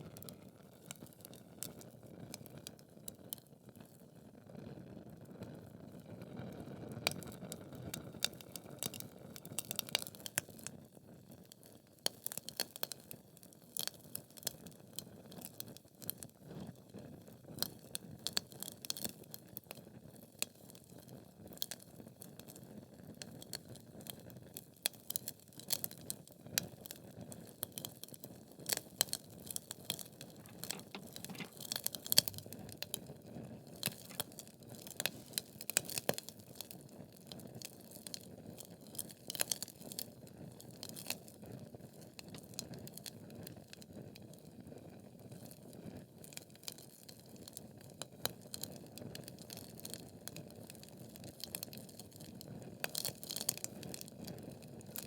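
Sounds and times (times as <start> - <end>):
fire crackling and popping: 30.4 - 36.7.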